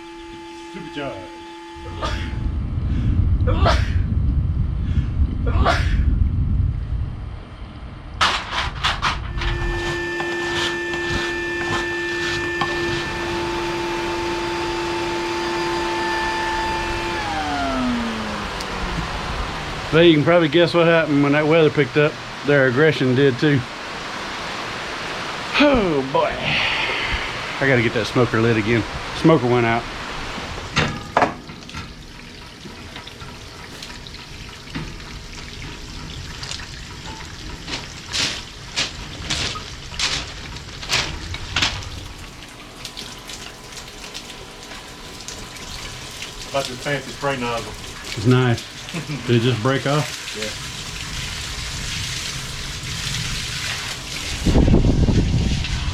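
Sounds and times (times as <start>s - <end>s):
vacuum motor whining: 0.0s - 2.5s, 9.4s - 20.0s
steady rain falling: 9.6s - 30.8s, 31.4s - 55.9s
short hissing bursts: 26.3s - 29.2s.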